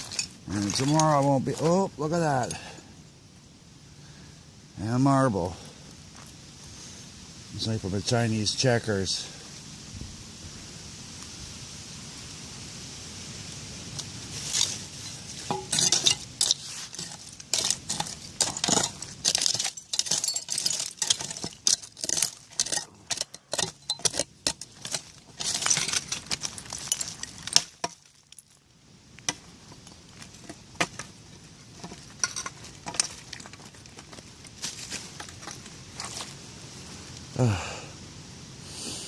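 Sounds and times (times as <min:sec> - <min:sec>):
glass and metal clinking and scraping: 0:00.0 - 0:01.8, 0:14.3 - 0:28.6, 0:31.8 - 0:34.2.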